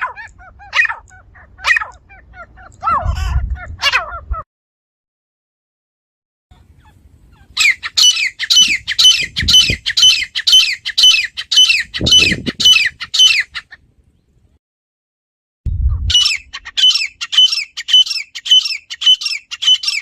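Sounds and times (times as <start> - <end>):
bird calling shrill notes: 6.8 - 13.6, 16.1 - 20.0.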